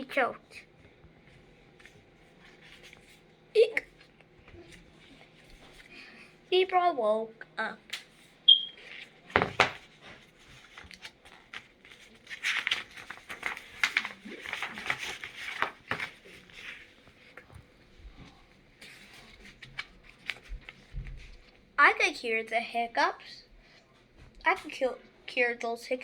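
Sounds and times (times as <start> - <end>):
book pages turning: 0.7 - 6.2, 7.9 - 21.6
paper rustling and crinkling: 0.8 - 6.4, 8.0 - 21.6.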